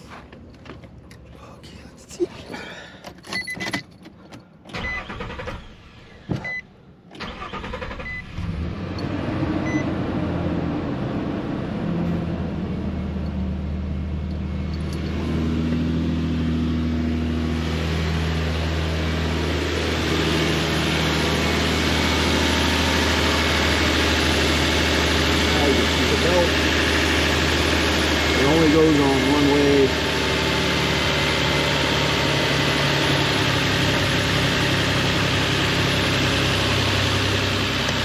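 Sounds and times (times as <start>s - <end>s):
car engine starting and idling: 2.6s - 38.0s.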